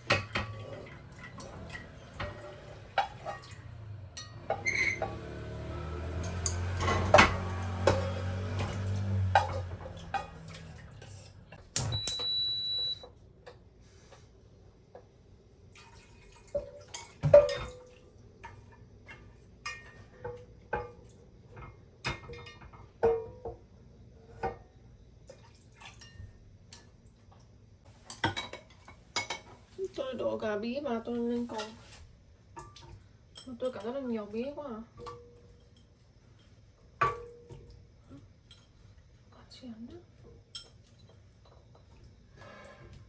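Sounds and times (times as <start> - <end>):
dishes and utensils clinking: 0.0 - 12.3, 16.5 - 23.6, 27.9 - 29.8, 35.0 - 38.9, 40.3 - 43.0
water running: 0.0 - 13.0
high beep: 11.8 - 13.0.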